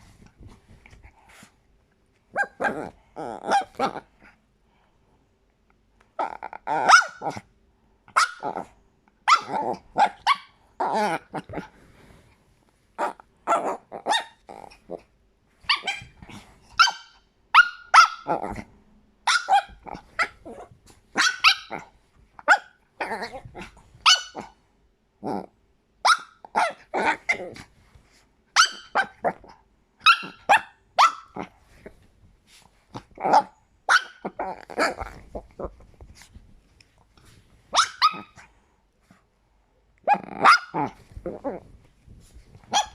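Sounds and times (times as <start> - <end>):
small dog yapping: 9.3 - 10.5, 15.7 - 16.2, 16.8 - 18.4, 28.6 - 29.2, 30.0 - 31.5, 33.3 - 35.0, 37.7 - 38.4, 40.1 - 40.9, 42.7 - 42.9
dog growling: 34.3 - 35.8.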